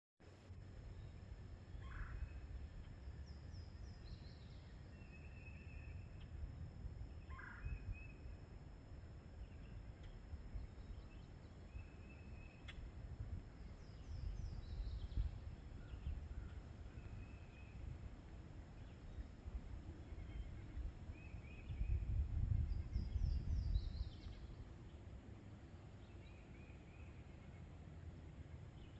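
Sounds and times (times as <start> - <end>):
steady low rumble: 0.3 - 11.6
short pulsed bird calls: 0.9 - 6.3
birds calling: 1.0 - 5.3.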